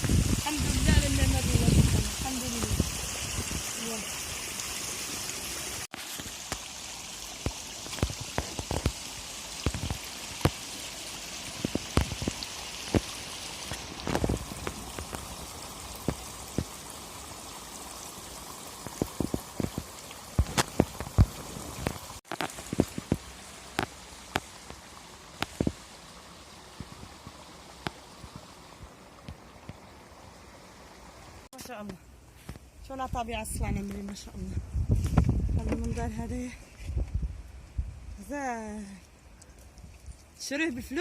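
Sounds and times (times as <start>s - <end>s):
mountain stream running: 0.0s - 41.0s
sharp ticks and knocks: 9.6s - 10.6s, 18.8s - 24.8s.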